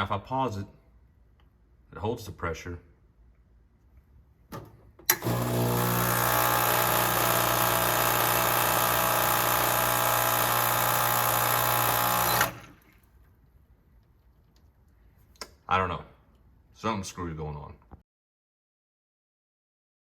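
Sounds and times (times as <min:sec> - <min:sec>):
pump switch click: 0:05.1 - 0:05.8
espresso machine pump buzzing: 0:05.1 - 0:13.0.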